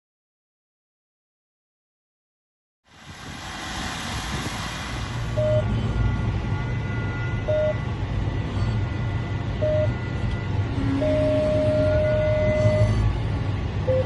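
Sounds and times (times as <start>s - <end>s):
farm machinery diesel engine: 2.9s - 14.0s
short warning beep: 5.4s - 7.9s, 8.5s - 13.1s.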